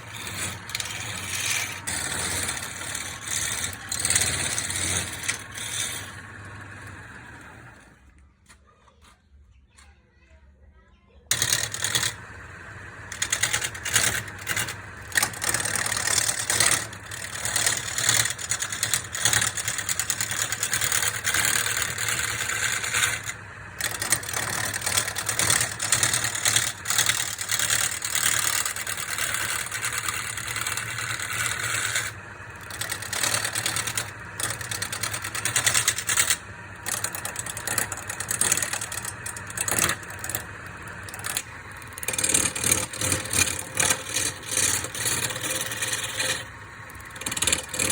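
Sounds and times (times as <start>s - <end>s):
tool hissing into spinning wood: 0.0s - 7.7s, 11.3s - 47.9s
lathe motor hum: 0.0s - 8.1s, 11.3s - 47.9s.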